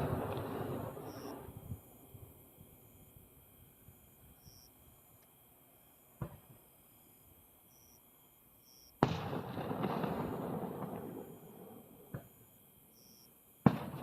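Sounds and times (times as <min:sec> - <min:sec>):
fireworks crackle: 0:00.0 - 0:01.9, 0:09.0 - 0:12.4, 0:13.6 - 0:14.0
fireworks bangs: 0:00.0 - 0:02.0, 0:09.0 - 0:12.4, 0:13.6 - 0:14.0
faint firework pop: 0:06.2 - 0:06.6, 0:12.1 - 0:12.4.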